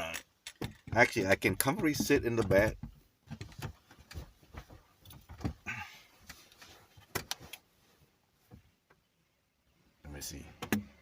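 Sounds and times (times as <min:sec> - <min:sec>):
light clicks and knocks: 0:00.1 - 0:07.7, 0:10.5 - 0:11.0.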